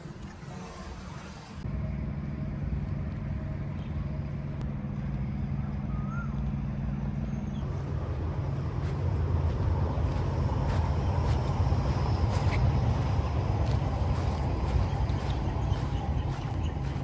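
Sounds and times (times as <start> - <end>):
passing motor traffic hum: 0.0 - 17.0
bird chirp: 5.6 - 7.7, 10.1 - 17.0.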